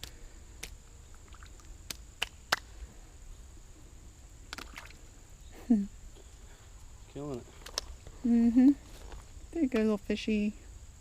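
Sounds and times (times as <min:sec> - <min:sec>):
high insect hum: 0:00.0 - 0:11.0
fish splashing at water surface: 0:04.5 - 0:05.0.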